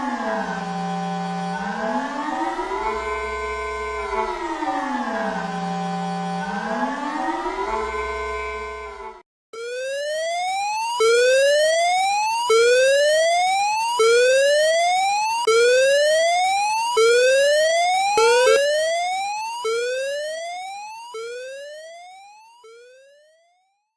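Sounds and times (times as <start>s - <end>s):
alarm siren whooping: 9.6s - 23.5s.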